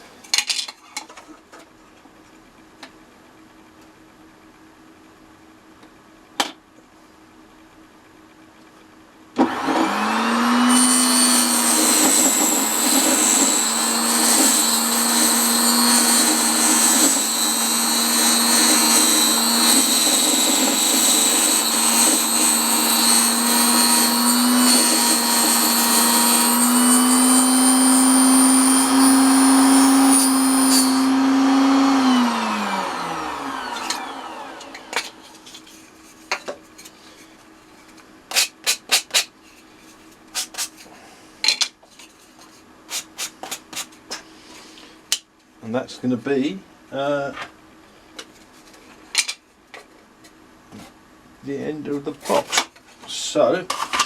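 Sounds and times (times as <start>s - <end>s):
saw blade spinning down: 9.4s - 35.4s
table saw motor whining: 9.4s - 35.6s.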